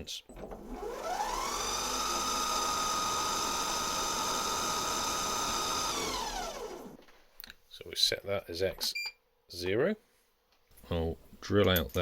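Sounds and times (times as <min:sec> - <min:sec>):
lathe motor whine: 0:00.4 - 0:07.0.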